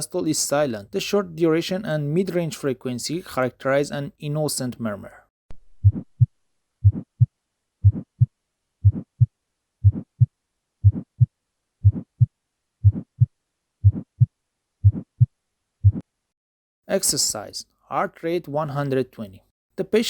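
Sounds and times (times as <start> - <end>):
heartbeat through stethoscope: 5.6 - 16.0
heart murmur: 5.8 - 16.0.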